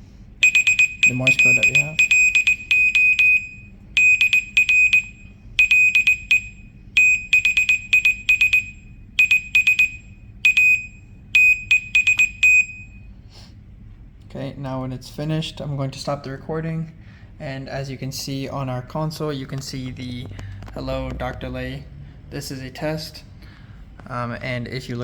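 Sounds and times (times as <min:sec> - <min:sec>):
morse code beeps: 0:00.4 - 0:13.1.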